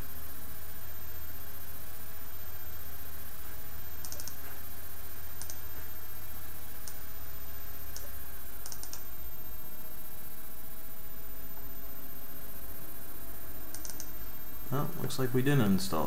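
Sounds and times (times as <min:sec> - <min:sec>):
background hiss: 0:00.0 - 0:16.0
low electrical hum: 0:00.0 - 0:16.0
mouse and keyboard clicks: 0:04.0 - 0:04.6, 0:05.4 - 0:05.6, 0:07.9 - 0:09.0, 0:13.7 - 0:14.2.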